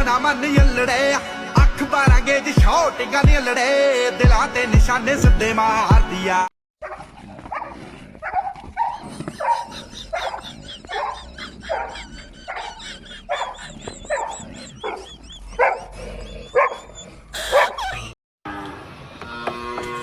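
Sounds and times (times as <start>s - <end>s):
dog barking: 6.8s - 18.2s.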